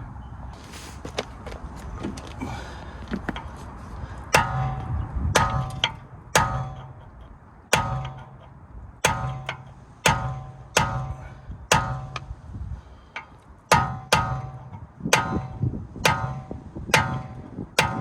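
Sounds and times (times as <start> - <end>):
hammer striking steel: 4.3 - 12.4, 13.1 - 18.0.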